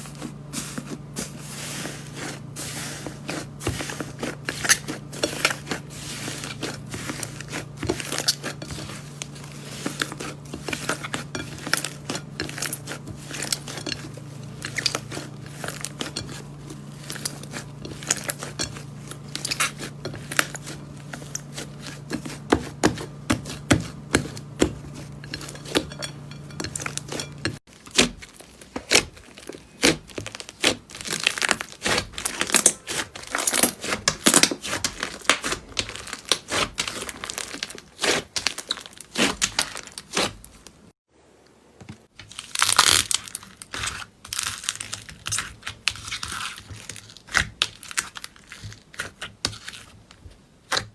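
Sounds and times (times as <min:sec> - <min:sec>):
low steady hum: 0:00.0 - 0:34.3
slime squishing and crackling: 0:00.0 - 0:40.9, 0:42.2 - 0:50.0.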